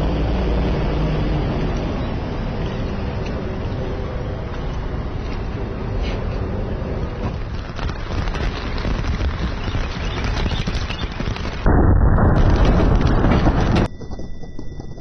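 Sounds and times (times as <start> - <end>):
wind noise: 0.0 - 15.0
deep explosive blast: 11.2 - 13.9.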